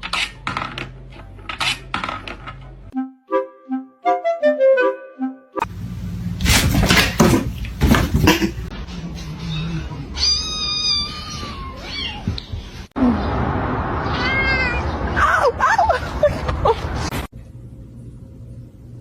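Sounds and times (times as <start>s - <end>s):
knocks and thumps: 6.5s - 8.6s
cat meowing: 9.1s - 12.4s, 14.0s - 15.0s.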